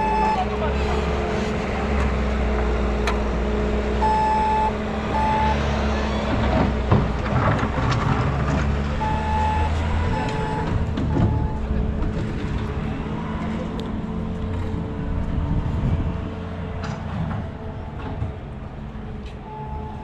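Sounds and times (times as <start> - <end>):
heavy vehicle engine running: 0.0 - 20.0
electronic reversing beeper: 4.0 - 5.9, 9.0 - 11.7.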